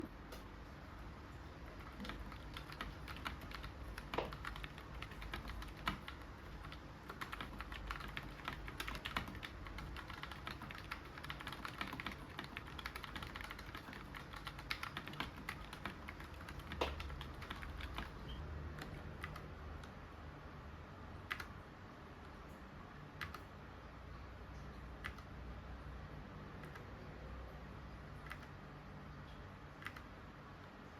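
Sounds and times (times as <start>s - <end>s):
typing on mechanical keyboard: 1.7s - 19.5s, 21.2s - 21.5s, 23.2s - 23.5s, 28.2s - 28.6s, 29.8s - 30.1s.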